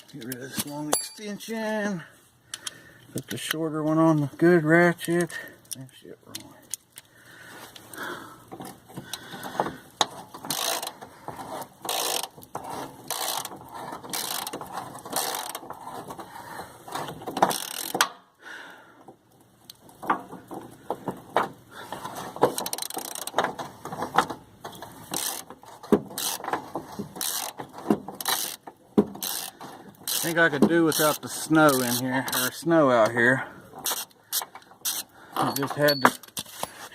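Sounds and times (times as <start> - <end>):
hand ratchet clicking: 10.0 - 11.0, 11.8 - 15.7, 17.0 - 18.2, 22.5 - 23.5, 25.0 - 26.5, 27.2 - 27.6, 28.2 - 32.5, 33.8 - 36.4.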